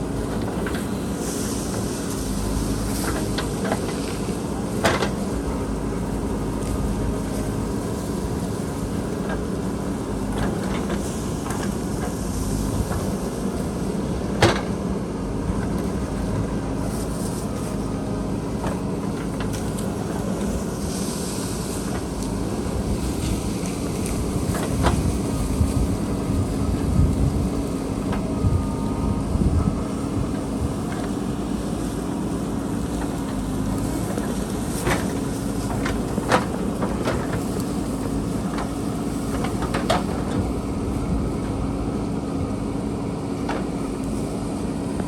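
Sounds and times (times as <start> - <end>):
diesel engine running: 0.0 - 45.0.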